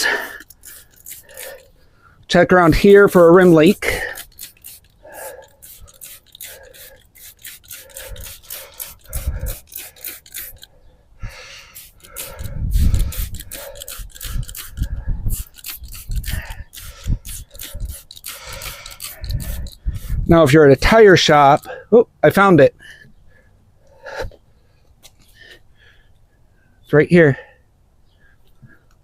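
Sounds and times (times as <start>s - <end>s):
rubbing and scraping on tire: 0.0s - 21.8s.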